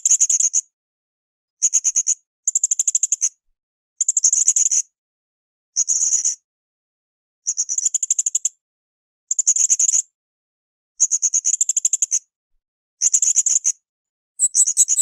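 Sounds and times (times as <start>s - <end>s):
parrot chattering: 14.4s - 15.0s.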